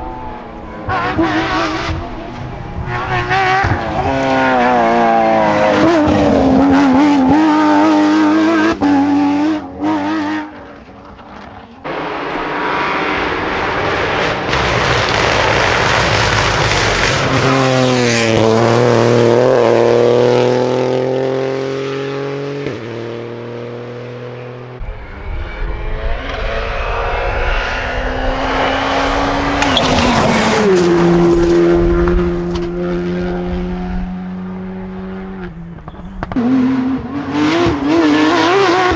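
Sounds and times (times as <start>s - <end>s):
car engine at high revs passing: 0.0s - 38.9s
tyre noise: 24.8s - 38.9s.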